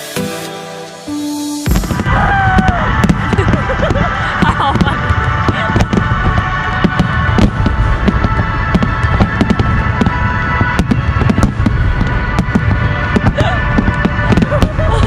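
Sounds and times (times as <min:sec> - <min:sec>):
music playing: 0:00.0 - 0:15.0
fireworks bangs: 0:01.7 - 0:15.0
low rumble: 0:01.7 - 0:15.0.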